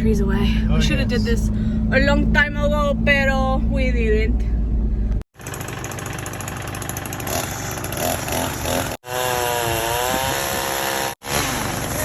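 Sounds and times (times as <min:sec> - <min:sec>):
chainsaw cutting wood: 0:05.4 - 0:12.0.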